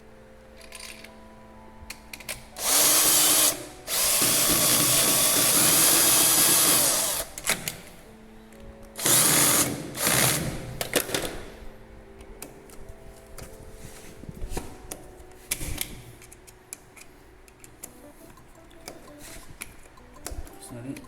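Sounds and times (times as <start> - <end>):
small clicks and handling: 0.6 - 1.2
cordless drill driving screw: 2.6 - 7.8, 9.0 - 10.6.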